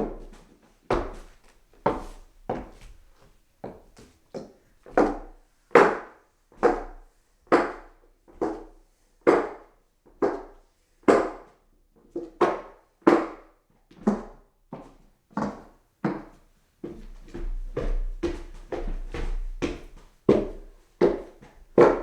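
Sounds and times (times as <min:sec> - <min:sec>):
footsteps on wooden stairs: 0:00.1 - 0:05.0, 0:15.4 - 0:22.0.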